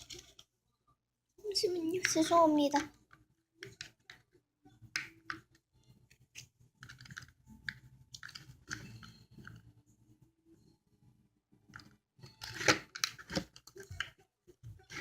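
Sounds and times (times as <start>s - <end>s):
small objects clicking and scraping: 0.0s - 0.6s, 2.0s - 9.8s, 11.7s - 15.0s.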